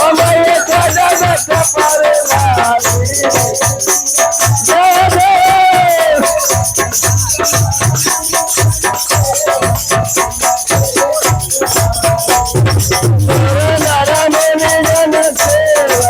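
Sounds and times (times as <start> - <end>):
steady drum beat: 0.0 - 16.0
wavering melody line: 4.6 - 15.2.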